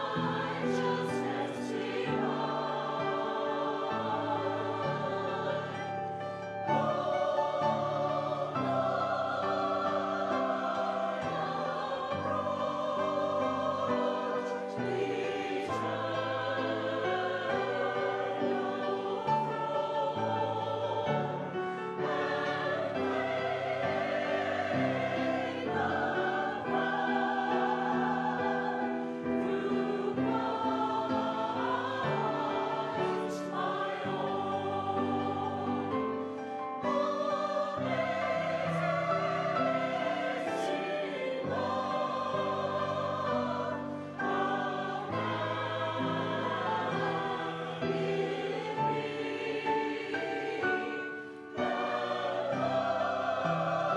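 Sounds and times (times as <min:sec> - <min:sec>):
choir singing: 0:00.0 - 0:53.9.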